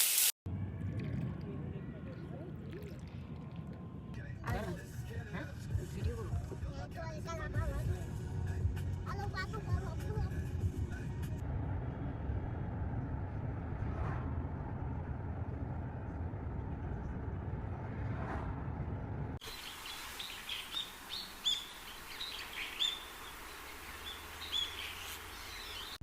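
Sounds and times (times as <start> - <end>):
low rumble: 0.5 - 6.7, 10.3 - 19.4
soft outdoor hiss: 19.4 - 26.0
songbirds chirping and singing: 19.5 - 26.0.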